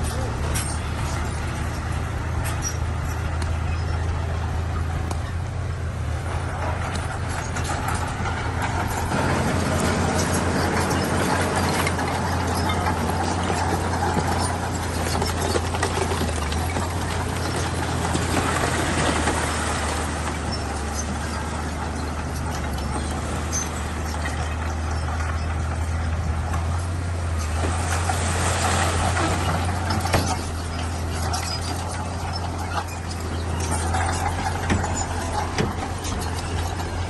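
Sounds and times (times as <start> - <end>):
bulldozer diesel engine drone: 0.0 - 37.0
machine clattering: 6.2 - 37.0.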